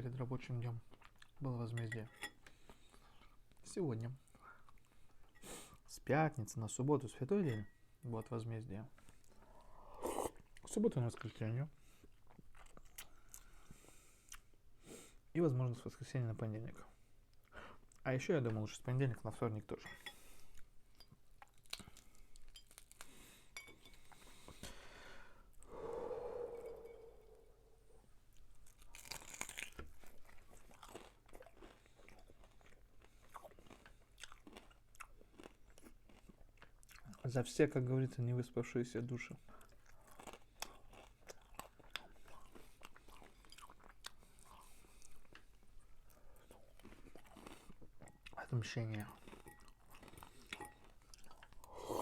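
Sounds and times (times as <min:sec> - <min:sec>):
chewing and biting food: 0:12.0 - 0:14.6, 0:28.3 - 0:37.2, 0:39.6 - 0:51.8
utensils clinking on dishes: 0:50.6 - 0:50.8.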